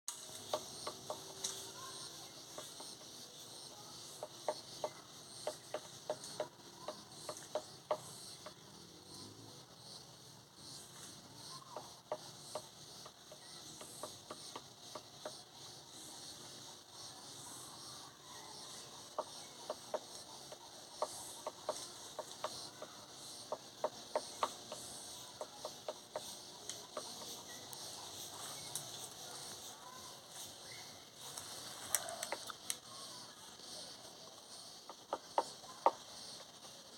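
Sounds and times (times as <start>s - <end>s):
high hiss of insects: 0.1s - 36.9s
woodpecker pecking at wood: 19.2s - 30.0s.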